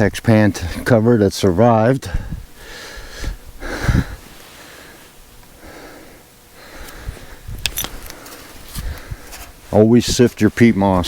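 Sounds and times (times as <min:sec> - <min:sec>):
man breathing heavily: 0:02.0 - 0:09.6.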